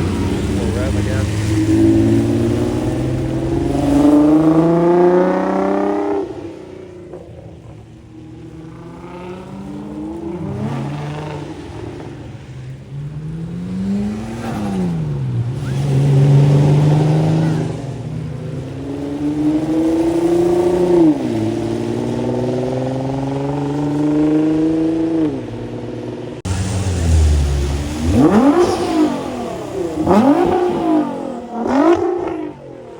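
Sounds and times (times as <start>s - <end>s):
car engine accelerating hard: 0.0s - 32.9s.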